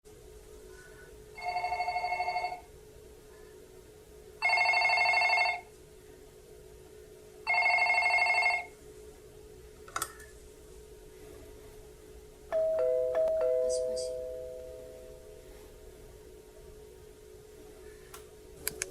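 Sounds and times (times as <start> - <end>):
electric bell ringing: 1.4 - 2.6, 4.4 - 5.6, 7.5 - 8.7, 12.5 - 15.4.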